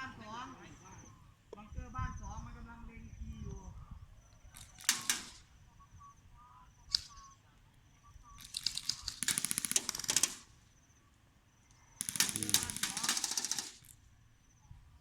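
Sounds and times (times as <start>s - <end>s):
airsoft guns firing: 4.5s - 5.7s, 8.4s - 10.8s, 11.8s - 14.1s.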